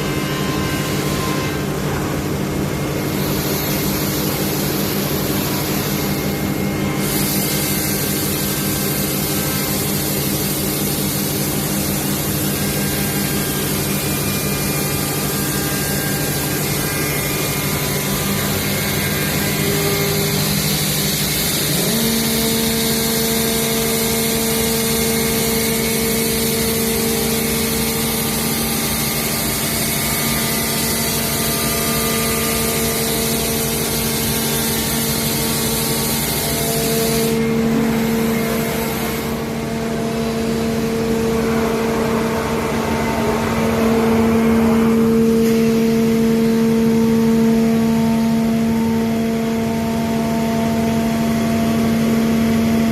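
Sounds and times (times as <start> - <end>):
router spindle hum: 0.0 - 52.9
loud hiss of wood cutting: 2.8 - 41.6.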